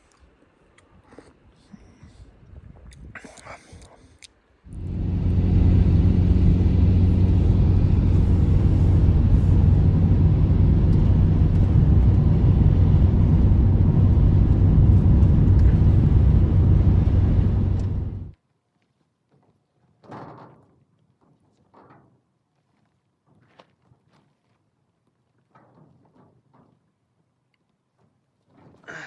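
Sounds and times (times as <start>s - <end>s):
engine-like drone: 4.7s - 18.4s.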